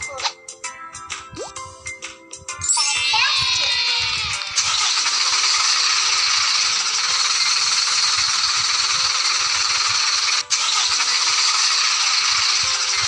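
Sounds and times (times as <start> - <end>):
mechanical whirring and rattling: 3.3 - 13.0.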